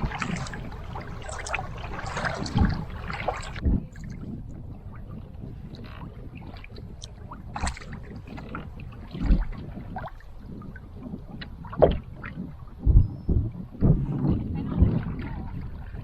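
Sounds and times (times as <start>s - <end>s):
canoe paddle splashing: 0.0s - 12.8s
wind rumble on microphone: 0.0s - 16.0s.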